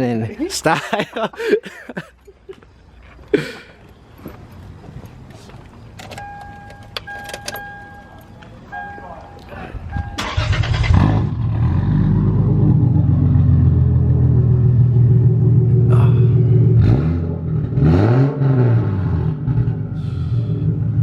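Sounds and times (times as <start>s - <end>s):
car engine idling: 6.2s - 16.8s
engine throttle blip: 8.8s - 11.4s.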